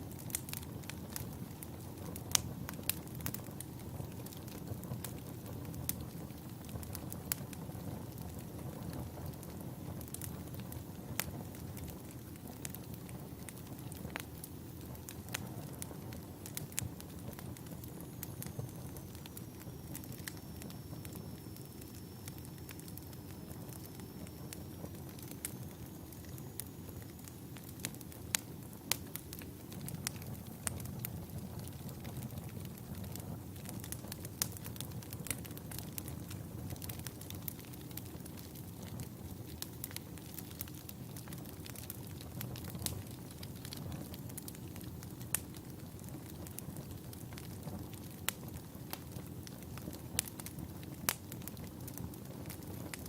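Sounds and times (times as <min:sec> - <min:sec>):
logs crackling and popping: 0:00.0 - 0:53.0
wood fire rumbling: 0:00.0 - 0:53.0.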